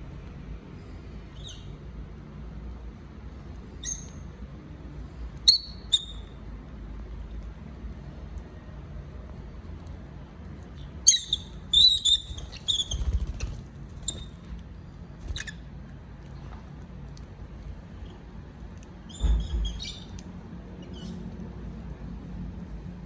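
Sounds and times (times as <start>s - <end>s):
lovebirds squeaky chirps: 11.1s - 14.4s, 15.2s - 15.6s.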